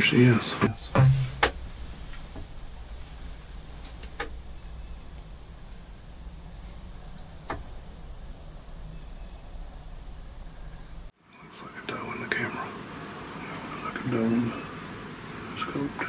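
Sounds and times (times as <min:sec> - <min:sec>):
faint clicks: 0:00.0 - 0:12.5
insects trilling: 0:00.0 - 0:16.0.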